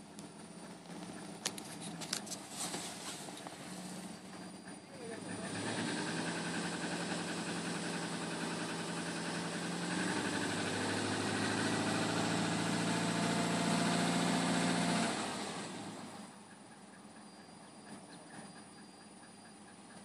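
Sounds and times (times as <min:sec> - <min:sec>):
car engine idling with knock: 0:00.0 - 0:09.8, 0:16.1 - 0:20.0.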